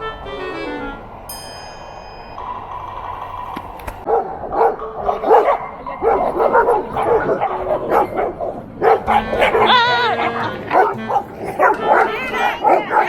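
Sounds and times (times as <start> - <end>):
dog barking: 4.1 - 13.0.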